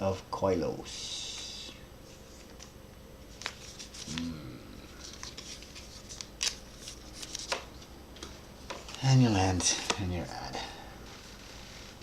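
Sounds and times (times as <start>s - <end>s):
cards clicking and rustling: 5.0s - 10.1s.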